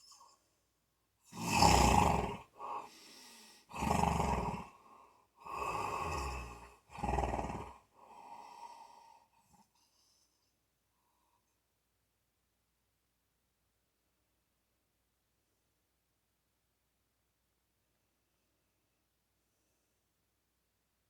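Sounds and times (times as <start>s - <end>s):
quiet breaths: 0.0s - 0.7s, 1.3s - 11.8s, 18.3s - 20.3s
person snoring: 1.3s - 9.7s.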